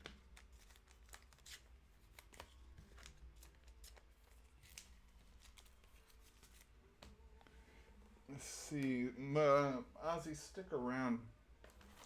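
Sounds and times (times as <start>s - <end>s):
cards and wrapping rustling: 0.0s - 7.3s, 11.6s - 12.0s.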